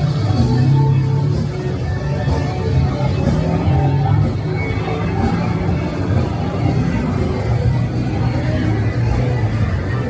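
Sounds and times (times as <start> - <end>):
crowd chatter: 0.0 - 10.0
loud music with heavy bass: 0.0 - 10.0.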